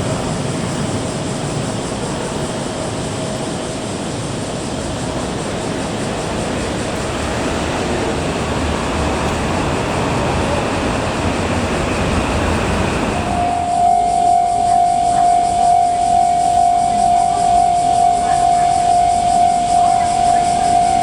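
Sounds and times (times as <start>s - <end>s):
train rumbling past on rails: 0.0s - 21.0s
faint steady tone: 4.2s - 21.0s.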